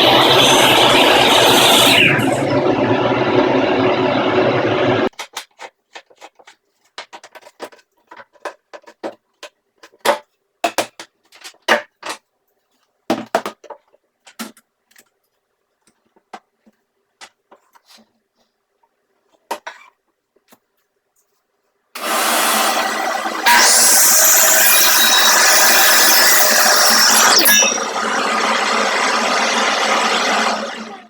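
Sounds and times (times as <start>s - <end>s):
shop vac and miter saw running: 0.0s - 5.1s, 22.0s - 31.0s.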